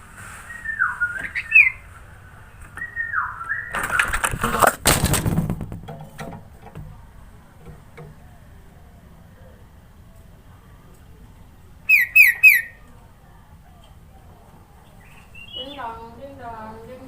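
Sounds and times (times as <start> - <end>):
bulbul whistled phrases: 0.5 - 1.8, 2.8 - 3.8, 11.9 - 12.8, 15.0 - 16.0
loud rustling: 3.7 - 8.0.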